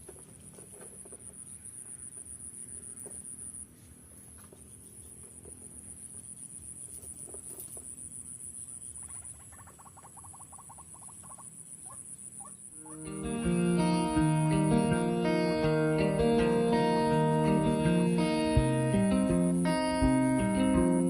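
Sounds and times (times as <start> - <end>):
insects high-pitched pulsing drone: 5.0 - 21.0
bird chattering: 9.0 - 13.2.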